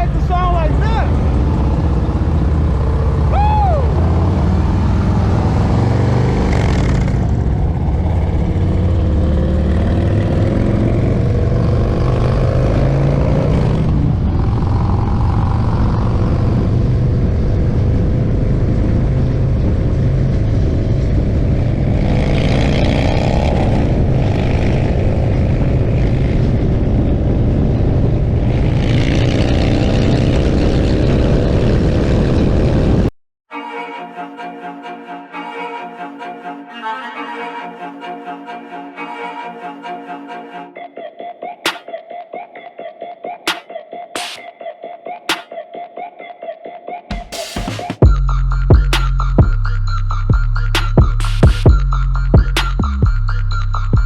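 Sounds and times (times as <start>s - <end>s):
motorcycle engine revving: 0.0s - 33.1s.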